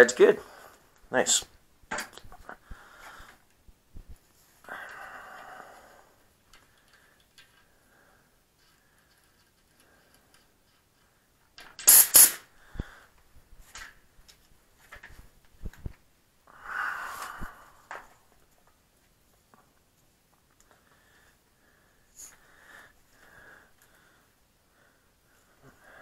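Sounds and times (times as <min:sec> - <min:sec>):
air hissing from tire valve: 0:11.8 - 0:12.5.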